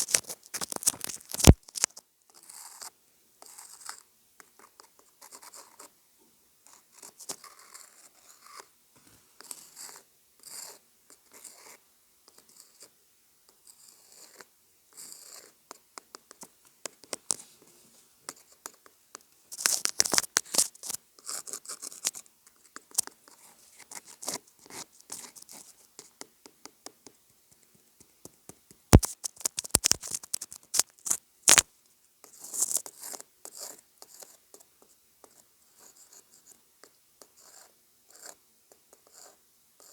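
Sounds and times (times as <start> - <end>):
scratchy rustles: 0.0 - 1.9, 19.5 - 22.2, 28.9 - 31.6, 32.4 - 33.2.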